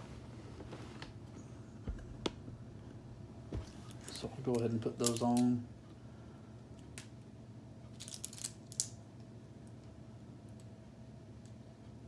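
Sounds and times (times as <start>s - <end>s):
plastic pieces clicking: 4.0s - 5.5s, 8.0s - 9.0s.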